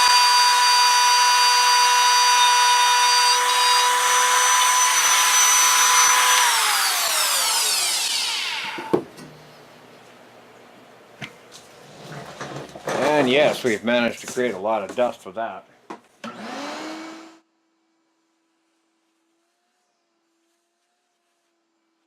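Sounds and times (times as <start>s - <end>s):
table saw whining: 0.0s - 9.0s, 16.2s - 17.4s.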